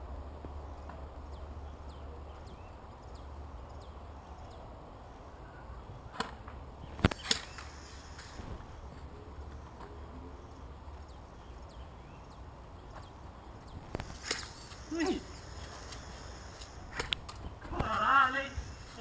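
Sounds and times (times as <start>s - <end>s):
low wind rumble on microphone: 0.0s - 9.4s.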